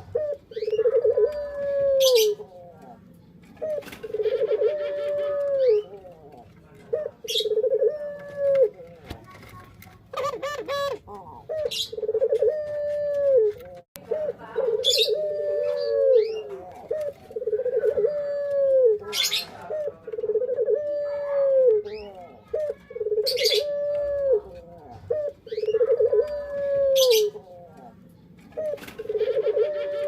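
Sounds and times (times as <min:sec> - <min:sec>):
small birds chirping: 0:00.0 - 0:07.8, 0:08.8 - 0:12.3, 0:21.1 - 0:29.3
dove cooing: 0:00.0 - 0:30.0.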